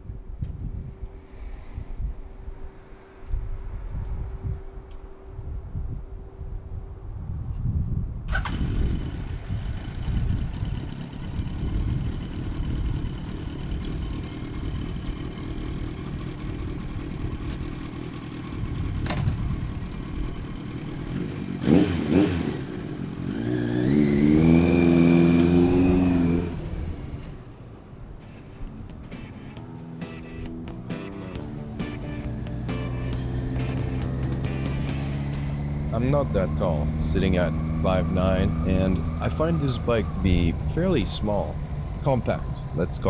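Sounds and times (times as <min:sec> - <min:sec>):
motorcycle engine running: 0:08.3 - 0:29.2.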